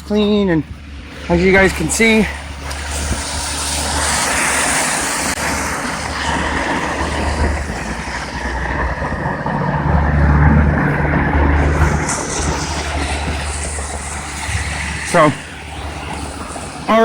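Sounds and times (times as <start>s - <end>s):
heavy vehicle engine hum: 0.0s - 17.0s
tyre hiss on slushy road: 0.8s - 8.7s, 11.6s - 17.0s.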